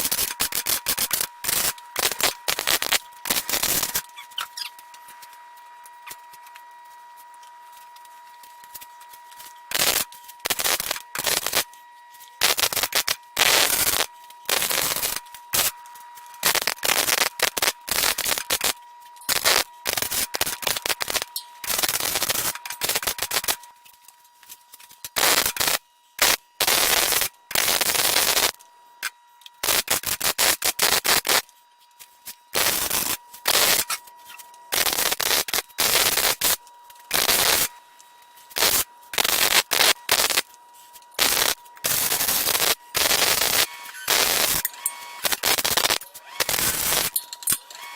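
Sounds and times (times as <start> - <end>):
welder arc crackling: 0.0 - 4.4, 9.7 - 11.7, 12.4 - 23.7, 25.0 - 28.6, 29.6 - 31.5, 32.6 - 34.0, 34.7 - 37.8, 38.5 - 40.6, 41.2 - 47.9
faint steady whine: 0.0 - 47.9.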